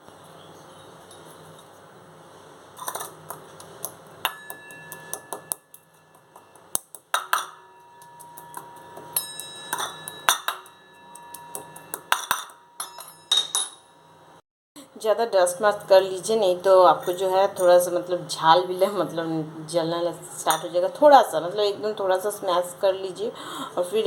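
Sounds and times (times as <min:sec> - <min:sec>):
spices pounded in mortar: 0:02.8 - 0:13.4
short metallic ring: 0:07.3 - 0:14.2.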